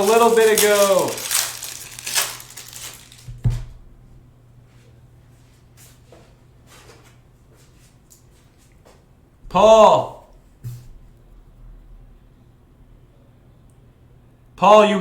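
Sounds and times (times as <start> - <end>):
cards rustling: 0.0 - 3.3.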